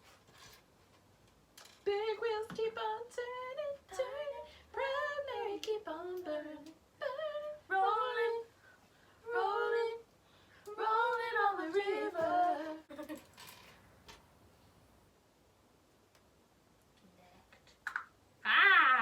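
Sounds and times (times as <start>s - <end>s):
woman singing unaccompanied: 1.7s - 8.6s, 9.2s - 10.1s, 10.7s - 13.2s.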